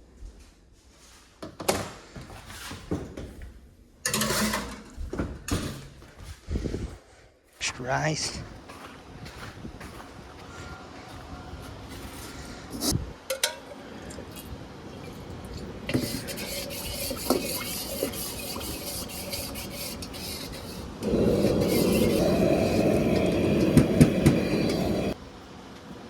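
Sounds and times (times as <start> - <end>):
steady hiss: 20.8 - 25.2
loud rumbling roar: 21.0 - 25.2.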